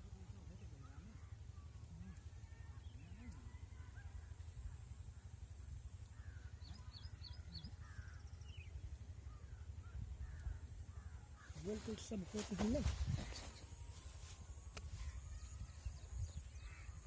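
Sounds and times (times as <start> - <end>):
low outdoor rumble: 0.0 - 17.0
crows cawing faintly: 5.9 - 17.0.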